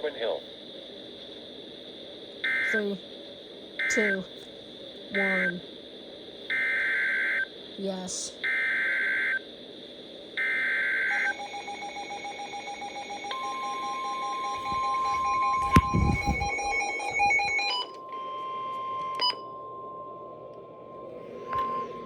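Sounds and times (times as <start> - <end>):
steady warning alarm tone: 1.6 - 22.0
fast pulsing alarm beep: 2.4 - 3.0, 3.8 - 4.3, 5.1 - 5.6, 6.5 - 7.5, 10.4 - 17.9
screeching data header: 3.8 - 4.4, 5.1 - 5.6, 10.4 - 17.7.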